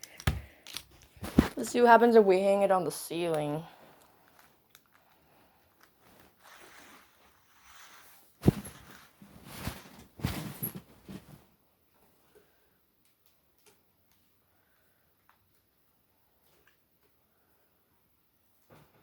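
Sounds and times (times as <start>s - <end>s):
faint rustling: 6.0s - 11.5s
short scraping or ripping noises: 6.1s - 11.3s.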